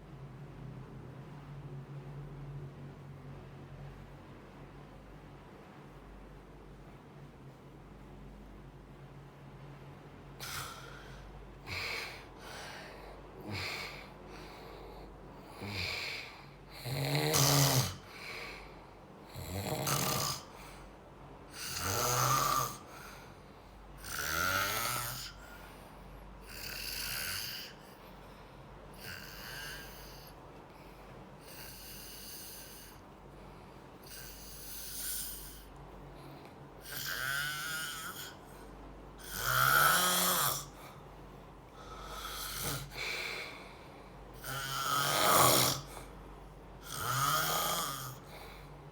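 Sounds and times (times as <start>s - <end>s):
person snoring: 10.4s - 20.9s, 21.5s - 23.4s, 24.0s - 25.8s, 26.4s - 28.3s, 28.9s - 41.0s, 41.7s - 46.2s, 46.8s - 48.9s.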